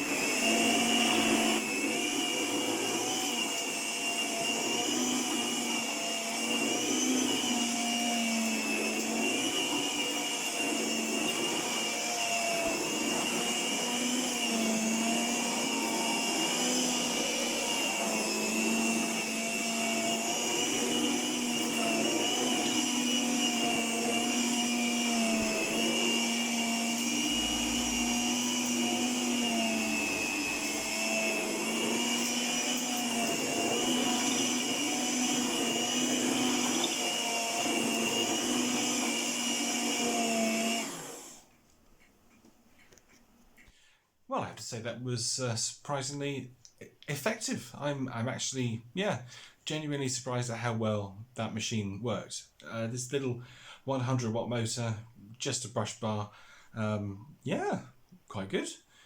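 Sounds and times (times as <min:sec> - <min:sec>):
carpet sweeper motor whining: 0:00.0 - 0:41.5.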